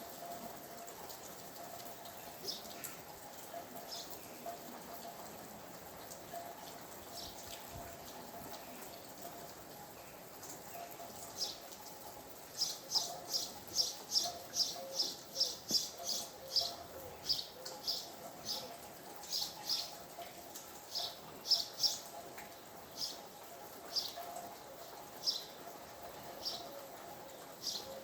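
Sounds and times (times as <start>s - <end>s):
faint hiss of rain: 0.0s - 28.0s
songbird chirping: 12.5s - 24.2s, 25.1s - 28.0s.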